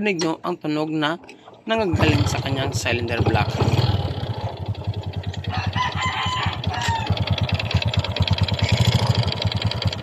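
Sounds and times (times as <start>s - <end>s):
motorcycle engine idling with knock: 3.1s - 10.0s
rooster crowing: 5.4s - 7.7s.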